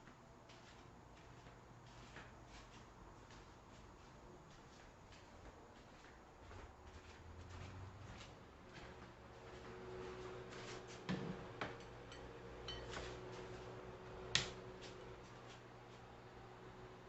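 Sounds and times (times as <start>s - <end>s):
faint steady hum: 0.0s - 17.0s
dishes and utensils clicking: 11.7s - 13.1s.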